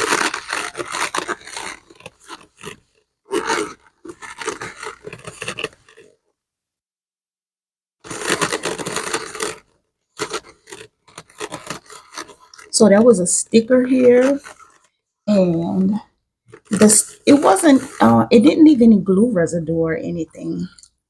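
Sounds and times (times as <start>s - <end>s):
cloth rubbing on a bag: 0.0s - 6.1s, 8.0s - 18.3s.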